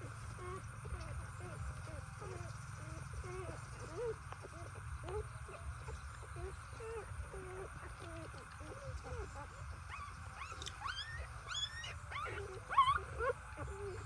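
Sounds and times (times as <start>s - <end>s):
animal squeaking: 9.2s - 14.0s.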